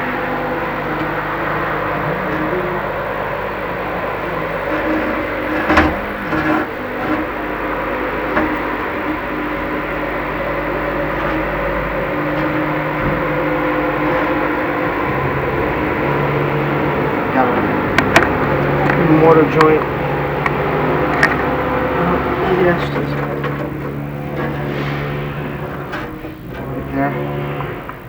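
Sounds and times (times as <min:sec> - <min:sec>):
construction mechanical hum: 0:00.0 - 0:28.0.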